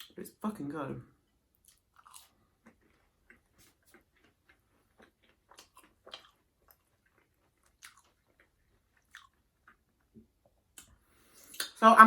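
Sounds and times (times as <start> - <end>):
person chewing food: 1.2 - 11.8
wet mouth clicks and smacks: 10.7 - 11.8.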